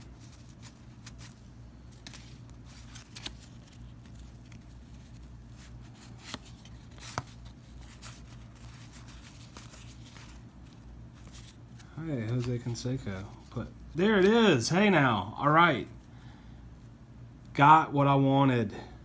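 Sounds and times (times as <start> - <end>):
cards being flipped: 0.0 - 14.5
steady low hum: 0.0 - 19.0.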